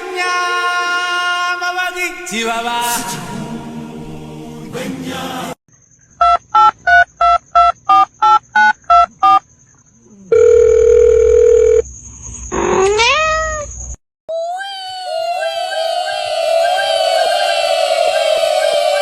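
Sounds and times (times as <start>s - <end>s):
short electronic beeps: 6.2s - 9.4s
steady electronic tone: 6.2s - 9.4s
cat meowing: 12.8s - 13.7s.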